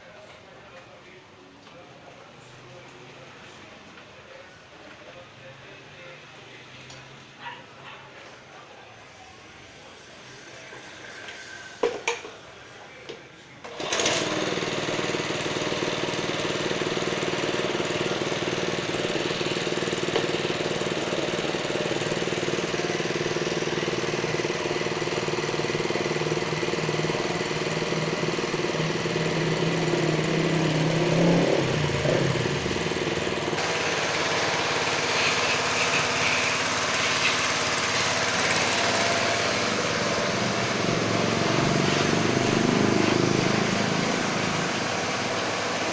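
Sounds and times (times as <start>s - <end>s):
pressure washer running: 13.6s - 45.9s.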